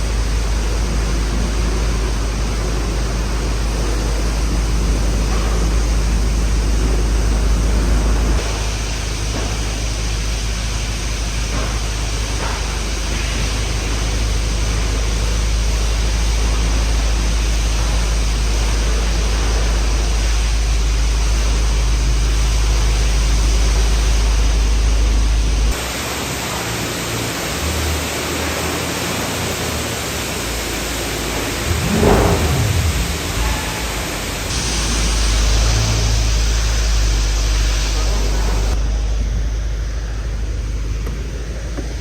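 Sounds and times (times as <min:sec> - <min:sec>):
car road and wind noise: 0:30.2 - 0:35.2.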